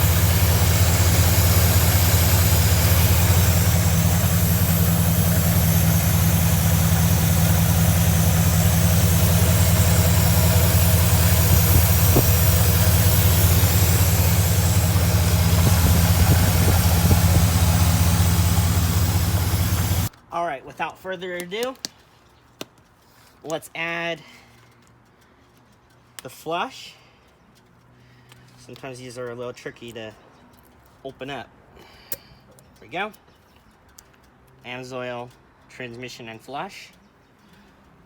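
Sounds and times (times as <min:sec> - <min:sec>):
car engine idling: 0:00.0 - 0:20.1.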